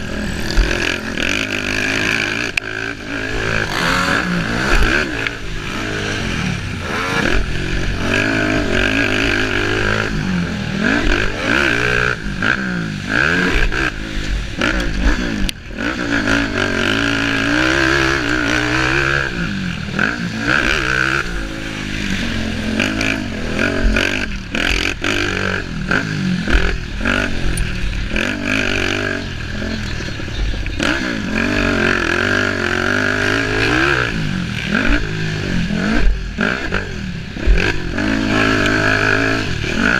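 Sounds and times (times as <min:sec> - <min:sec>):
racing engine revving: 0:00.0 - 0:39.9.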